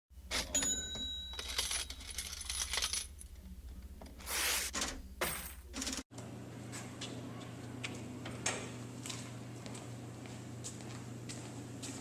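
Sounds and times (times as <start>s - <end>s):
coins clinking and jingling: 0.3s - 3.4s, 5.2s - 6.0s.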